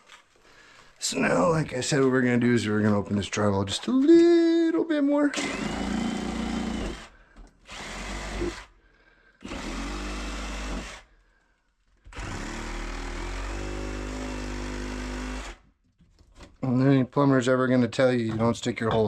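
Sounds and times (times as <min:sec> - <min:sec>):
power saw cutting drywall: 0:05.4 - 0:08.7, 0:09.4 - 0:11.1, 0:12.1 - 0:15.6.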